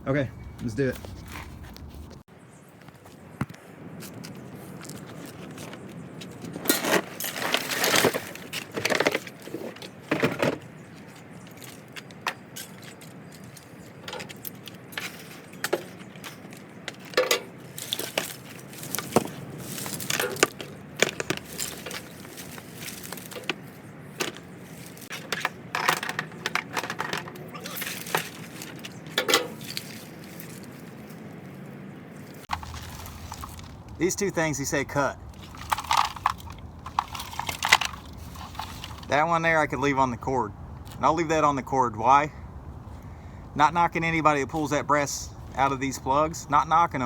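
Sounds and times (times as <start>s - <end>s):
metal wire clinking: 11.4s - 30.7s.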